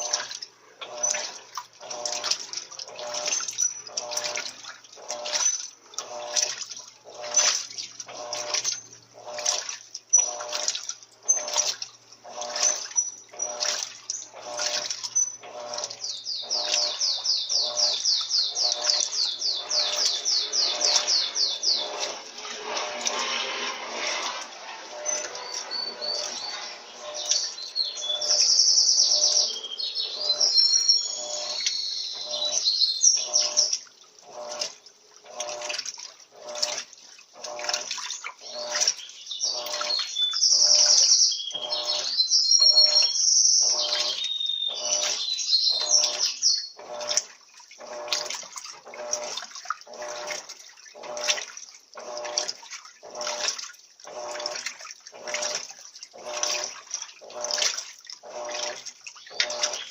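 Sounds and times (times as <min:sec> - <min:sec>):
washing machine water sloshing: 0:00.0 - 0:59.9
birds chirping: 0:00.9 - 0:23.3, 0:24.0 - 0:34.6, 0:37.4 - 0:47.2, 0:58.2 - 0:59.9.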